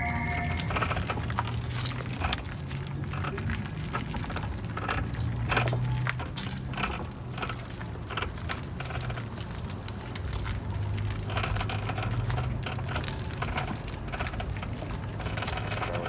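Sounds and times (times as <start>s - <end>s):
electric car hum: 0.0s - 5.8s
crunching clicks and knocks: 0.7s - 16.0s.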